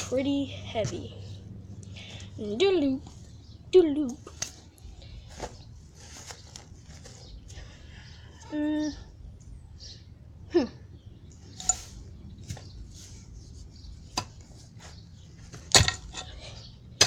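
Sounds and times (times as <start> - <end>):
pickaxe knocking into ground: 15.6 - 16.3.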